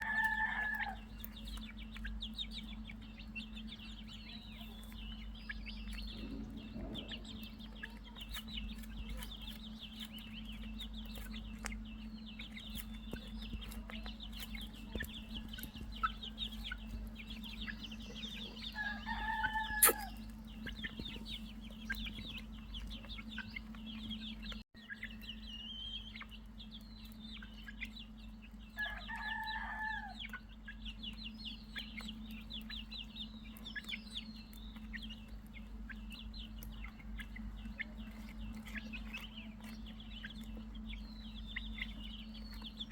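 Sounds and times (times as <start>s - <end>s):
adult chicken call: 0.0s - 1.1s, 18.7s - 20.2s
chicks peeping: 0.0s - 42.9s
steady low hum: 0.0s - 42.9s.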